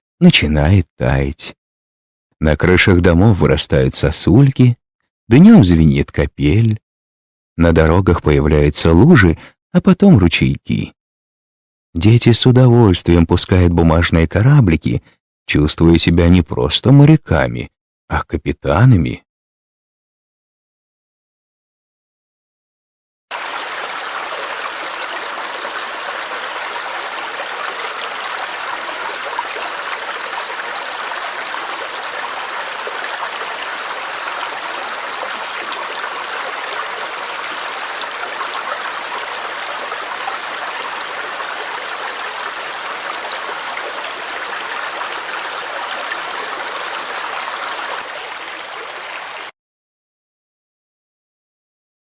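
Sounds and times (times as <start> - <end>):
small stream babbling: 23.3 - 49.5.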